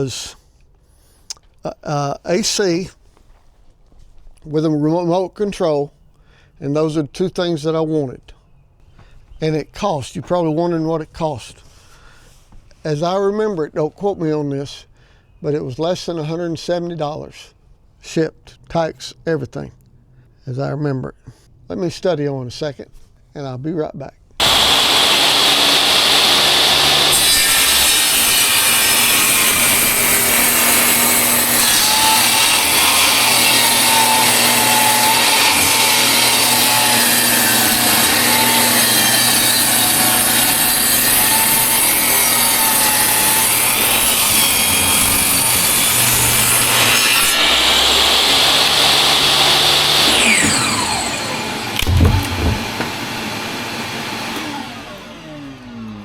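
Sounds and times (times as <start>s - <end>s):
power saw cutting wood: 24.4s - 56.0s
thumps: 51.8s - 53.3s.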